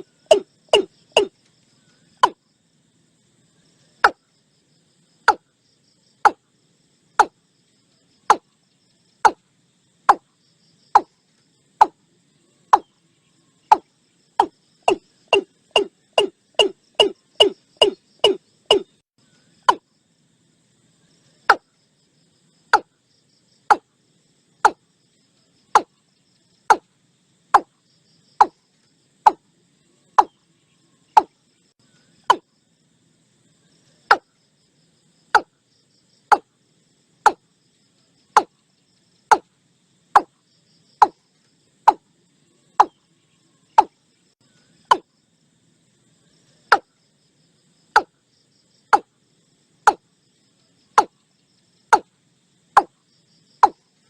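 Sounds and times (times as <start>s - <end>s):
bird calling sharp notes: 0.0s - 1.4s, 13.7s - 19.0s
faint insect chirring: 0.0s - 54.0s.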